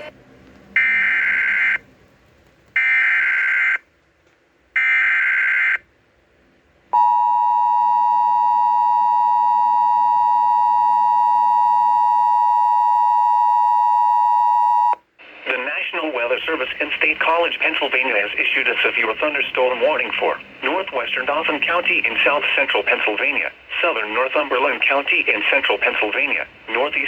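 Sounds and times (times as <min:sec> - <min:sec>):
loud steady attention tone: 0:06.9 - 0:15.0.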